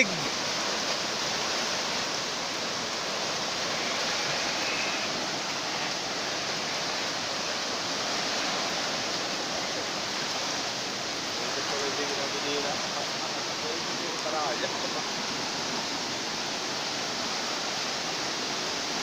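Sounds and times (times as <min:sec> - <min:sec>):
rushing floodwater and rain: 0:00.0 - 0:19.0.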